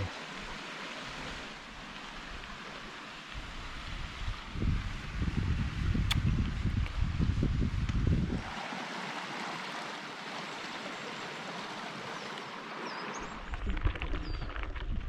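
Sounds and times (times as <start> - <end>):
stream water rushing over rocks: 0.0 - 5.2, 8.0 - 14.2
wind rumble on microphone: 3.4 - 8.6, 13.2 - 15.0.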